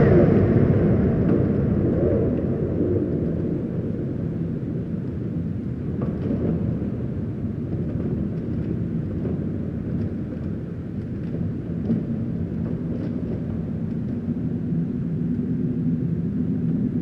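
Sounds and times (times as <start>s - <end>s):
low rumbling drone: 0.0s - 5.9s.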